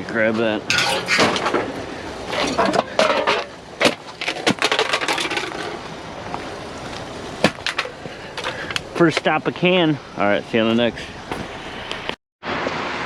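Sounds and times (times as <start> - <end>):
steady background noise: 0.0 - 13.0
objects clattering in a dumpster: 0.4 - 9.4.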